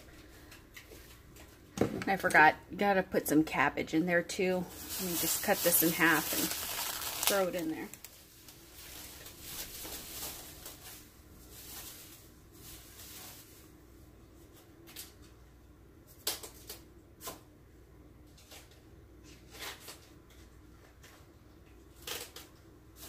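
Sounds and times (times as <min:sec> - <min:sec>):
faint steady hum: 0:00.0 - 0:23.0
rustling: 0:04.7 - 0:13.7.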